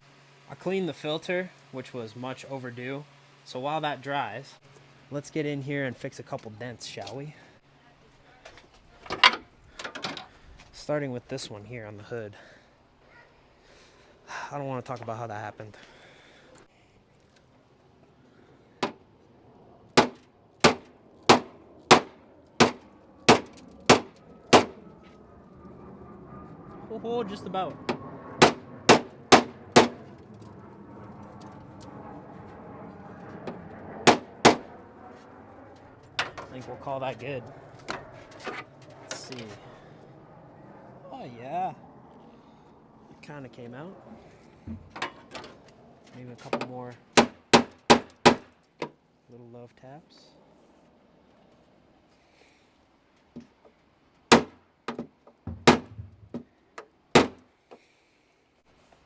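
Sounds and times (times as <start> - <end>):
blows on car sheet steel: 20.0 - 24.8, 27.8 - 30.2, 33.5 - 34.7.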